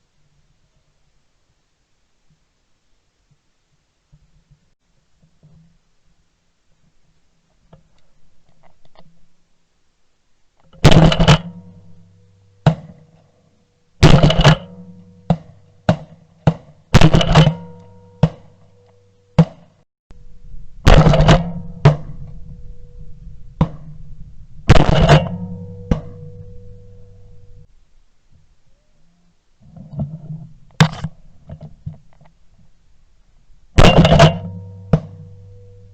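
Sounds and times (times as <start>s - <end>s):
heavy drum hits: 10.8s - 12.9s, 14.0s - 18.5s, 20.8s - 22.7s, 23.4s - 27.7s, 33.8s - 35.9s
low bass notes: 20.1s - 27.7s, 33.5s - 35.9s
held higher tone: 21.6s - 24.6s, 25.2s - 27.7s.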